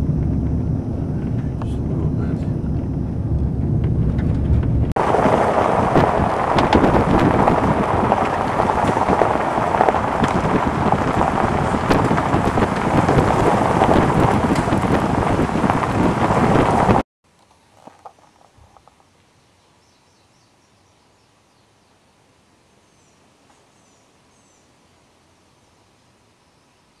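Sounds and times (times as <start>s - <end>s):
loud steady rushing noise: 0.0s - 17.0s.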